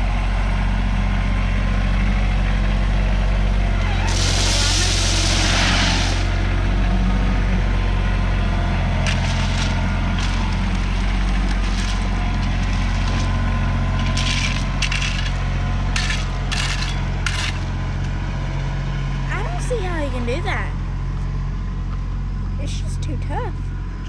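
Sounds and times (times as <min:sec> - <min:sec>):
excavator engine running: 0:00.0 - 0:24.0
rock and dirt scraping: 0:03.9 - 0:06.4, 0:09.0 - 0:17.7.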